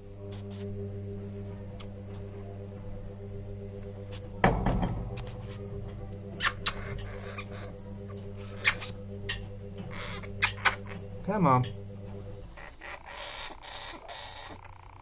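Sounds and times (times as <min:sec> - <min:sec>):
low hum: 0:00.0 - 0:13.6
loud knock: 0:04.4 - 0:05.2
hamster squeaking: 0:06.4 - 0:07.7, 0:08.5 - 0:10.8, 0:12.5 - 0:15.0.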